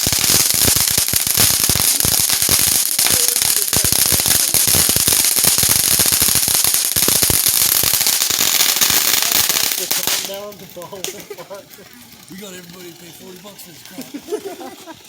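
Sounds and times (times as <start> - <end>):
firework crackling pops: 0.0 - 11.4
steady hiss: 0.0 - 15.0.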